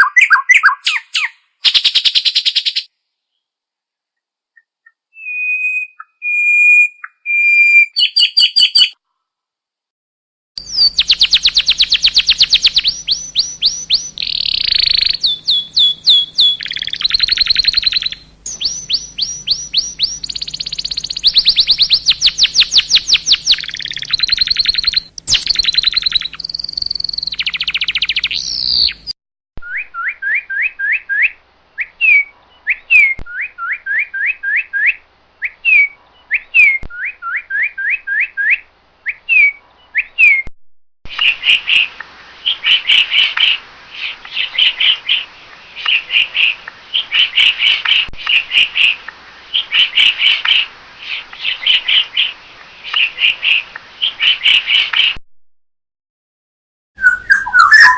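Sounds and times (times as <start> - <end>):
bird whistling rising notes: 4.8 - 9.0, 10.7 - 29.0, 29.6 - 40.4, 57.0 - 57.9
songbird trilling: 10.6 - 29.1, 57.0 - 57.9.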